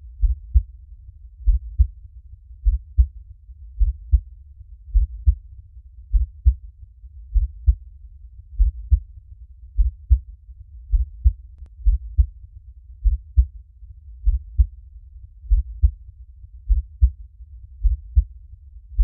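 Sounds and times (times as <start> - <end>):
slow heartbeat thumps: 0.2 - 0.7, 1.4 - 1.9, 2.6 - 3.1, 3.8 - 4.3, 4.9 - 5.4, 6.1 - 6.6, 7.3 - 7.8, 8.6 - 9.0, 9.8 - 10.2, 10.9 - 12.4, 13.0 - 13.5, 14.2 - 14.8, 15.5 - 16.0, 16.7 - 17.2, 17.8 - 18.3.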